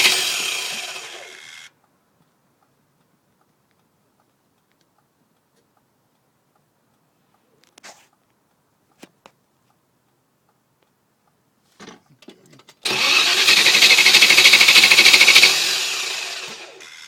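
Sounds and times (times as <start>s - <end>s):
engine cranking without firing: 0.0s - 1.6s, 12.2s - 17.0s.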